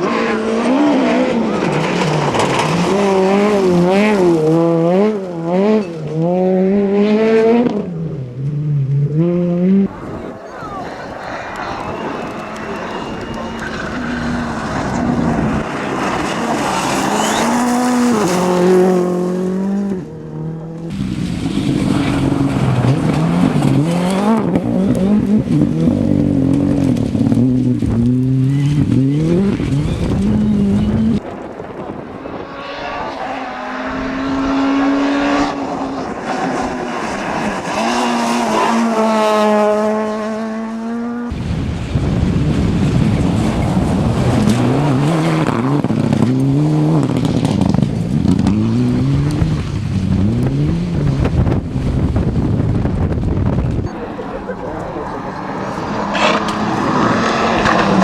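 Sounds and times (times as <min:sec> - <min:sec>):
rally car engines revving: 0:00.0 - 0:58.0
tyres squealing: 0:16.7 - 0:17.8.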